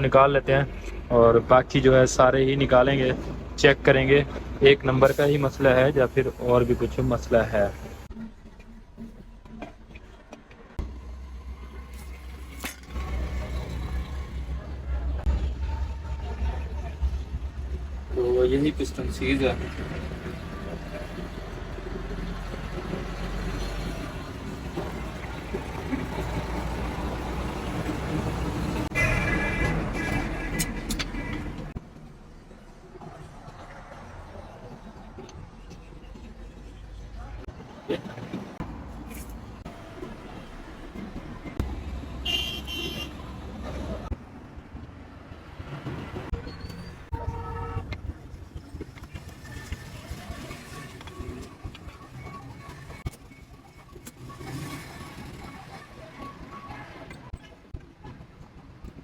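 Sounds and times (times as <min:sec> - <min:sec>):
low traffic rumble: 0:00.0 - 0:59.0
vehicle horn tooting: 0:28.9 - 0:31.4, 0:42.2 - 0:43.3, 0:47.1 - 0:47.9.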